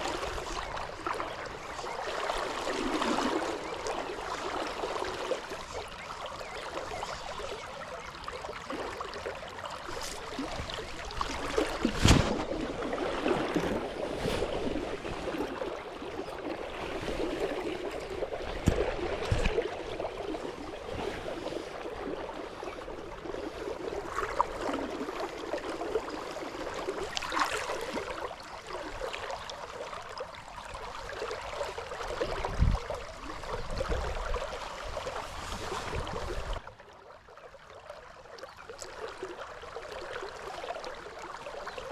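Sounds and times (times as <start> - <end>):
river water flowing: 0.0 - 41.9
sharp knocks or splashes: 10.0 - 14.6, 18.3 - 19.8.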